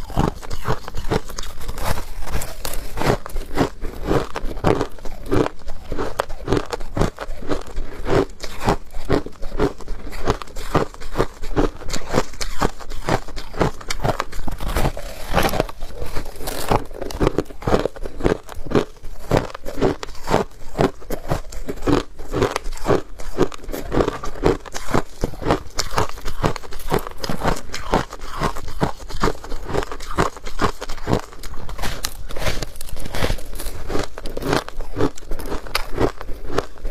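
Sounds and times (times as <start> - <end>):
ice being chewed: 0.0 - 36.9.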